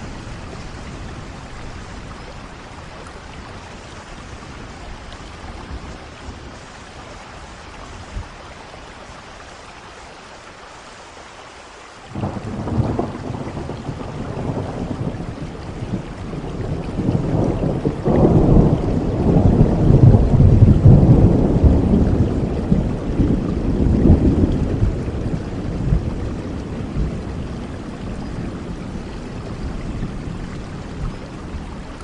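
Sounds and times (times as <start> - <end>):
steady rain: 0.0 - 32.0
thunder rumbling: 12.1 - 32.0.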